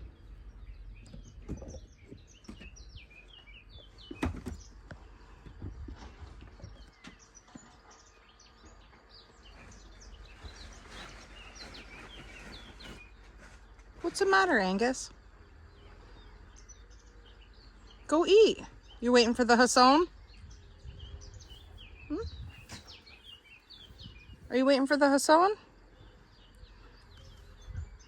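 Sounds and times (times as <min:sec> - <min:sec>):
small birds chirping: 0:00.0 - 0:28.0
low steady rumble: 0:13.1 - 0:28.0.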